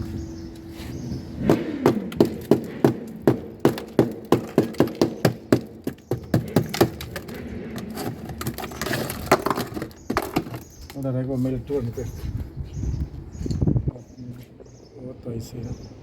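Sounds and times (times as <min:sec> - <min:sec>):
ice being chipped: 0:01.8 - 0:11.1.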